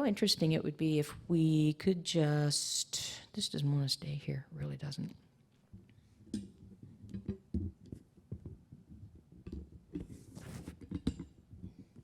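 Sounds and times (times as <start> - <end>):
microphone handling noise: 10.0 - 10.8.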